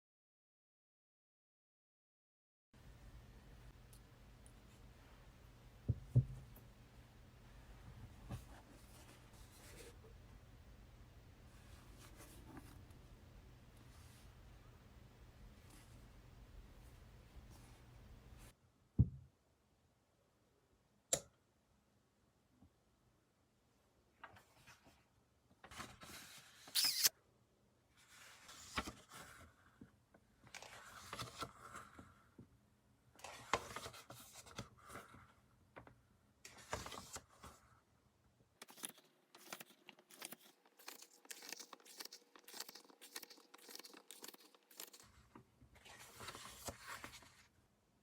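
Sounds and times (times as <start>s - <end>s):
paper rustling: 28.0s - 29.4s, 36.6s - 37.6s, 38.6s - 47.5s.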